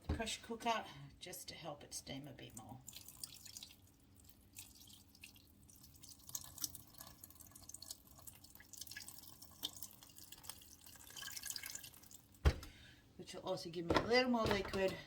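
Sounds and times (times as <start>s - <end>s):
water dripping into a pot: 2.3s - 12.4s.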